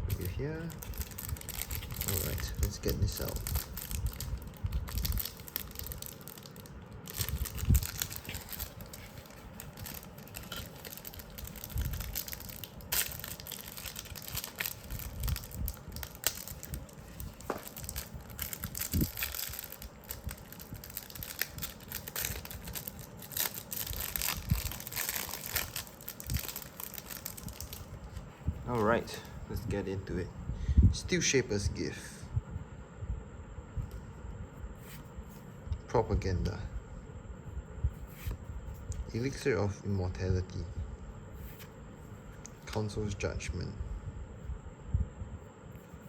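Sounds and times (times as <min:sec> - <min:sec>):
plastic packaging crinkling and tearing: 0:00.1 - 0:29.0.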